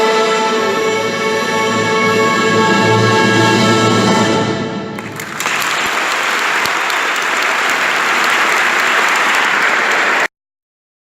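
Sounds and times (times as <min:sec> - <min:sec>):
audience applauding: 0:05.0 - 0:10.3.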